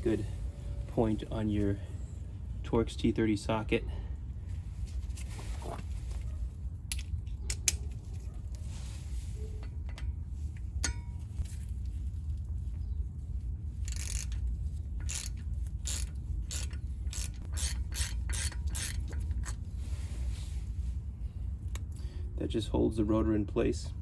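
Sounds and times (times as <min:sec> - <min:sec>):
steady low hum: 0:00.0 - 0:24.0
ratchet wrench clicking: 0:13.8 - 0:14.4, 0:15.0 - 0:19.6.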